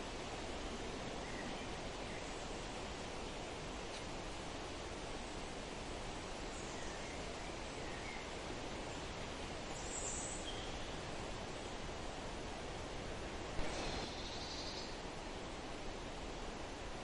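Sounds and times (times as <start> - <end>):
wind through trees: 0.0 - 17.0
faint bird chirps: 9.7 - 11.0, 13.6 - 15.0.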